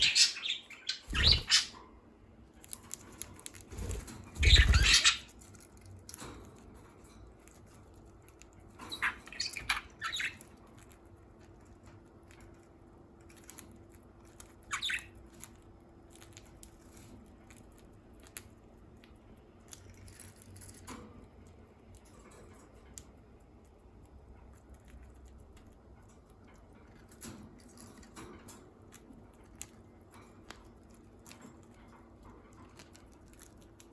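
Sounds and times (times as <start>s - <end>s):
budgerigars chirping: 0.0s - 1.8s, 4.4s - 5.3s
wing flapping: 3.6s - 5.2s.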